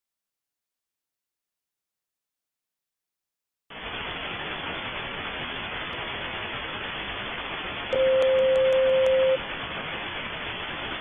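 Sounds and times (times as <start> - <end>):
static hiss: 3.7 - 11.0
steady beep tone: 7.9 - 9.4.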